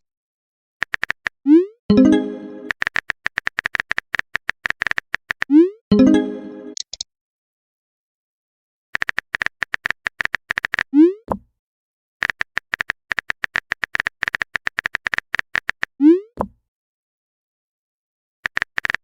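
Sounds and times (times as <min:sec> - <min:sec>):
smartphone keyboard clicks: 0:00.8 - 0:01.3, 0:02.7 - 0:05.5, 0:06.8 - 0:07.0, 0:09.0 - 0:10.9, 0:12.2 - 0:16.5, 0:18.4 - 0:19.0.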